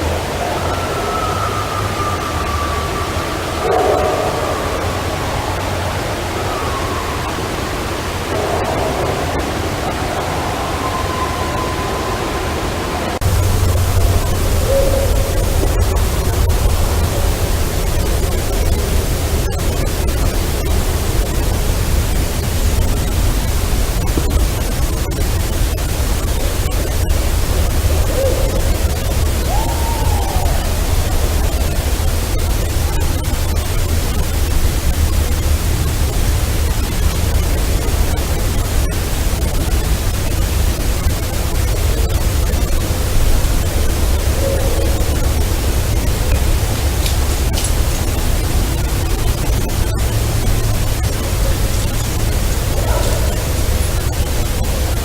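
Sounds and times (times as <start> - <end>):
loud hiss and low rumble: 0.0 - 55.0
faint clicks: 46.1 - 49.4.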